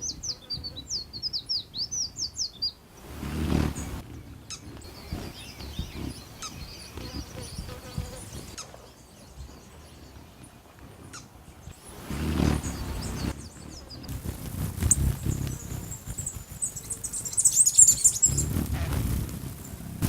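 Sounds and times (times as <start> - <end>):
small birds chirping: 0.0 - 20.0
low buzzing hum: 11.5 - 20.0.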